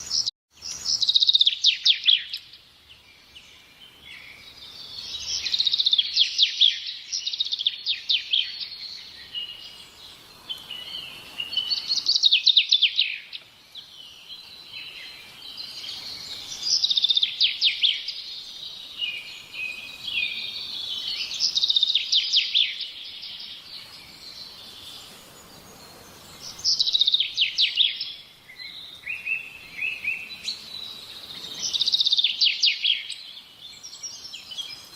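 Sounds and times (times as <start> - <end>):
songbird trilling and chirping: 0.0 - 34.9.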